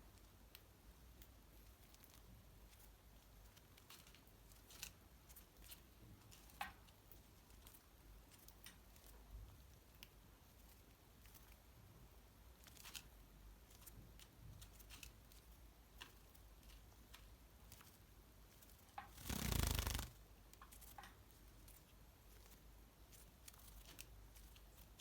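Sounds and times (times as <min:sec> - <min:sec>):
wing fluttering: 0:19.0 - 0:20.2
small clicks and taps: 0:20.5 - 0:21.9.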